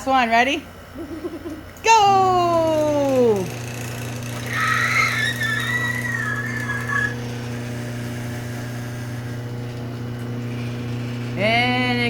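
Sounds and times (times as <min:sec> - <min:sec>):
garage door opener motor hum: 0:00.7 - 0:12.0
high wavering squeal: 0:04.4 - 0:07.4.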